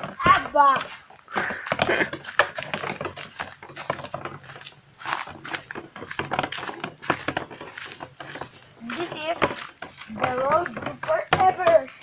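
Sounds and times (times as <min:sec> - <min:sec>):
footsteps crunching on dirt path: 0:00.0 - 0:12.0.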